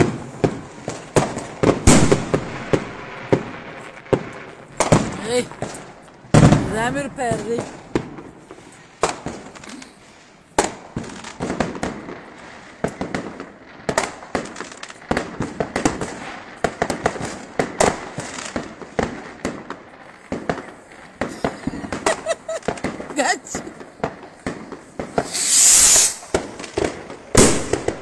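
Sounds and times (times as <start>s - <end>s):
fireworks bangs and crackles: 0.0s - 28.0s.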